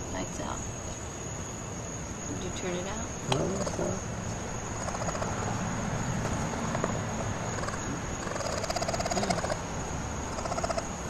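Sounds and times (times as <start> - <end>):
baby raccoons chittering: 2.2 - 11.0.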